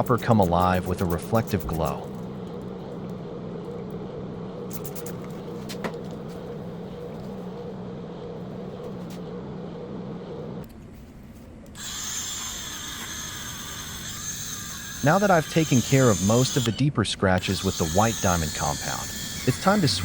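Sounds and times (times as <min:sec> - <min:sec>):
electric polishing motor humming: 0:11.8 - 0:16.8, 0:17.4 - 0:20.0.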